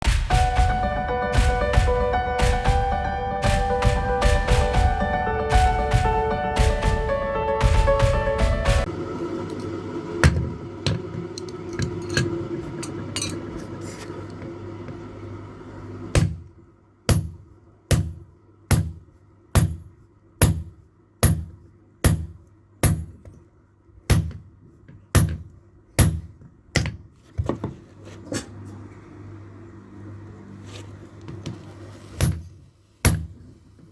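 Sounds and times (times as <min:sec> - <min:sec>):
background music: 0:00.0 - 0:08.9
hammer striking steel on anvil: 0:16.1 - 0:16.4, 0:17.1 - 0:19.0, 0:19.6 - 0:23.4, 0:24.1 - 0:24.4, 0:25.2 - 0:27.0, 0:33.1 - 0:33.4.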